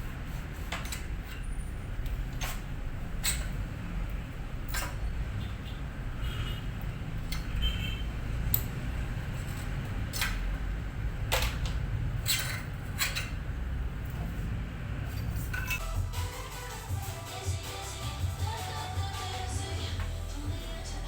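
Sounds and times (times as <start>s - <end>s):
metal tools clicking and scraping: 0.2s - 5.1s, 6.8s - 7.7s, 8.4s - 10.6s, 11.3s - 14.4s, 15.0s - 15.8s
steady low rumble: 15.8s - 21.0s.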